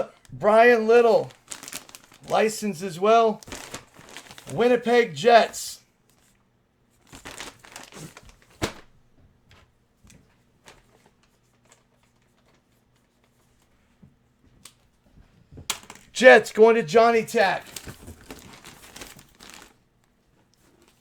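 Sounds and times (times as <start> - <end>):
packaging crinkling and rustling: 0.9 - 4.9, 7.0 - 9.0, 10.5 - 13.7, 17.4 - 21.0.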